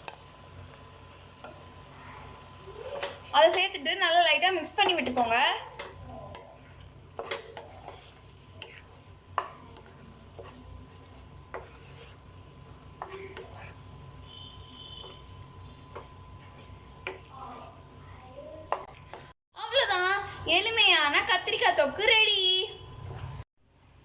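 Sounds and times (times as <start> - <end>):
faint sizzle: 0.0 - 24.0
spoon knocking and scraping a pan: 2.7 - 17.9, 18.6 - 19.4.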